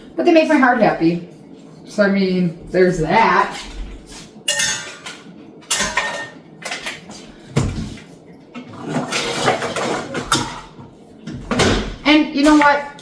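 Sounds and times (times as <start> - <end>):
dishes and utensils clinking: 4.5 - 10.9.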